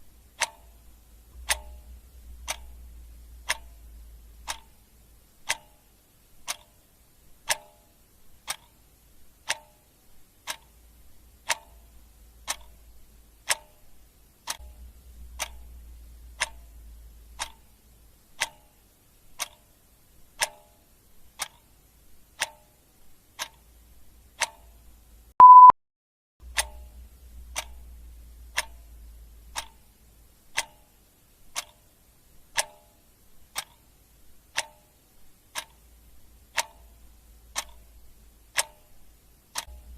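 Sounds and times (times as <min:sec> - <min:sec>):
clock ticking: 0:00.0 - 0:25.7, 0:26.4 - 0:39.9
short beep: 0:25.4 - 0:25.8.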